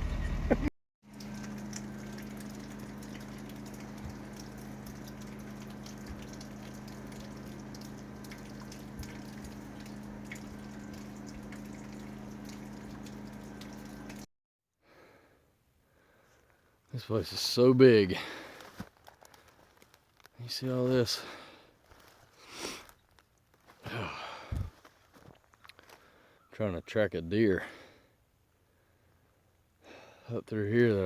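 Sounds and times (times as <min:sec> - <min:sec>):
low mechanical hum: 0:00.0 - 0:14.3, 0:15.0 - 0:26.4.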